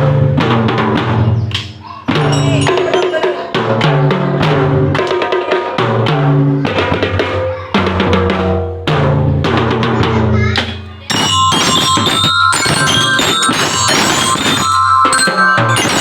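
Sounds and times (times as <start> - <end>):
snare and bass drums beating: 2.1 - 16.0
melody of held notes: 2.3 - 3.5, 11.0 - 16.0.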